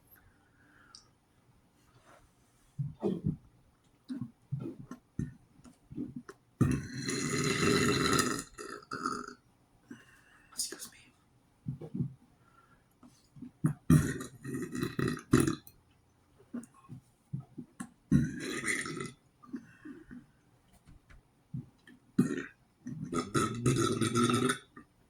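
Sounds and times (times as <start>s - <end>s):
man burping: 6.6s - 9.4s, 13.7s - 15.7s, 18.1s - 19.2s, 22.2s - 24.8s.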